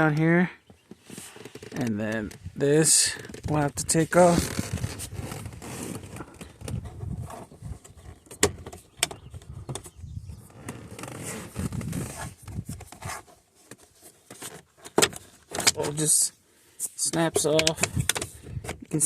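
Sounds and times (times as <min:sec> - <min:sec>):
plastic trim scraping and rustling: 0:03.1 - 0:16.2.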